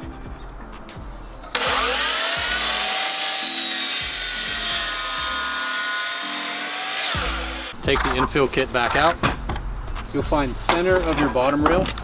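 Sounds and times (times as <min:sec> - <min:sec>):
miter saw cutting: 0:01.6 - 0:07.8.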